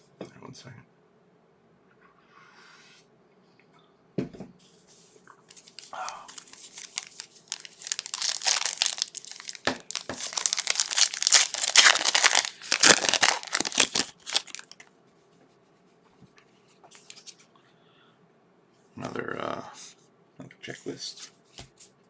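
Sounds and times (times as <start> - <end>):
foil wrapper tearing and crinkling: 5.5 - 14.8.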